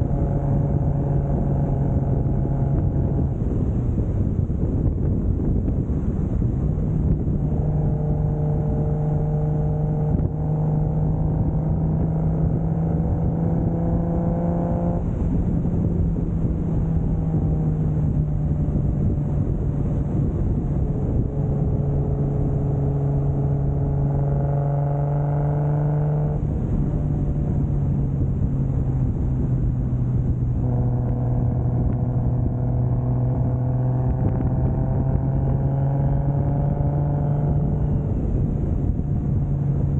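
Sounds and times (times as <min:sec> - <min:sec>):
car engine revving: 0:00.0 - 0:39.9
road noise: 0:00.0 - 0:39.9.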